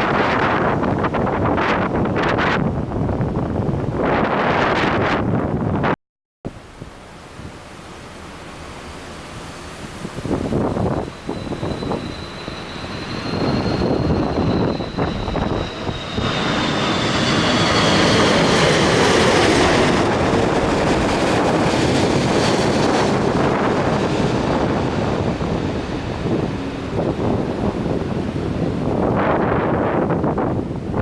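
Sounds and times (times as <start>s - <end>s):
jet engine whine: 0.0s - 5.8s, 6.5s - 31.0s
jet rush: 7.5s - 31.0s.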